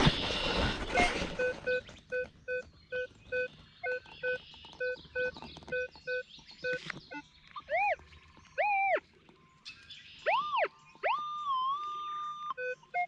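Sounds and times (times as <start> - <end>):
metal detector beeping: 0.0 - 8.0, 8.6 - 9.0.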